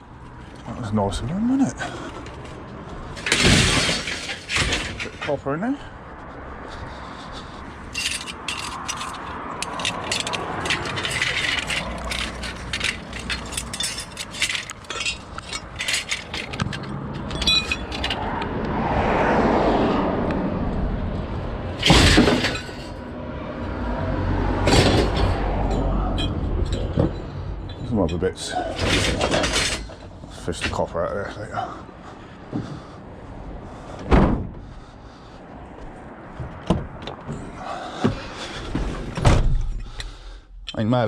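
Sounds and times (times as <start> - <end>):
scrap metal clinking and clattering: 1.8 - 5.4, 7.9 - 18.3, 21.8 - 23.0, 24.6 - 30.8
loud crash: 3.3 - 5.0, 21.8 - 22.8.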